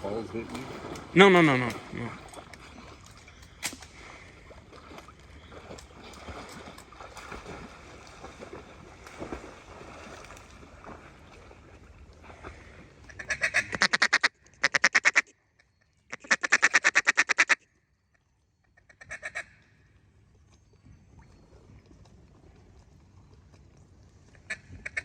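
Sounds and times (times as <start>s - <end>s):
duck call quacks: 13.2s - 15.3s, 16.1s - 17.6s.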